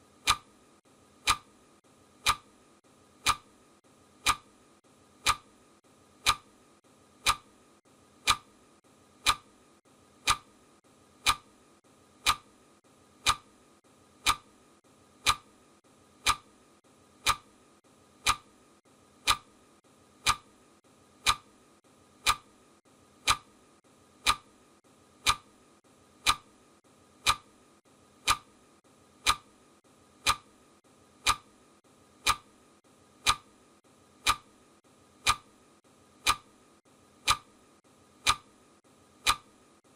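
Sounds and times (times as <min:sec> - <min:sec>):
clock ticking: 0:00.2 - 0:00.6, 0:01.2 - 0:01.6, 0:02.2 - 0:02.5, 0:03.2 - 0:03.6, 0:04.2 - 0:04.6, 0:05.2 - 0:05.6, 0:06.2 - 0:06.6, 0:07.2 - 0:07.6, 0:08.2 - 0:08.6, 0:09.2 - 0:09.6, 0:10.2 - 0:10.6, 0:11.2 - 0:11.6, 0:12.2 - 0:12.6, 0:13.2 - 0:13.6, 0:14.2 - 0:14.6, 0:15.2 - 0:15.6, 0:16.2 - 0:16.6, 0:17.2 - 0:17.6, 0:18.2 - 0:18.6, 0:19.2 - 0:19.6, 0:20.2 - 0:20.6, 0:21.2 - 0:21.6, 0:22.2 - 0:22.6, 0:23.2 - 0:23.5, 0:24.2 - 0:24.6, 0:25.2 - 0:25.6, 0:26.2 - 0:26.6, 0:27.2 - 0:27.6, 0:28.2 - 0:28.6, 0:29.2 - 0:29.6, 0:30.2 - 0:30.6, 0:31.2 - 0:31.6, 0:32.2 - 0:32.6, 0:33.2 - 0:33.6, 0:34.2 - 0:34.6, 0:35.2 - 0:35.6, 0:36.2 - 0:36.6, 0:37.2 - 0:37.6, 0:38.2 - 0:38.6, 0:39.2 - 0:39.6.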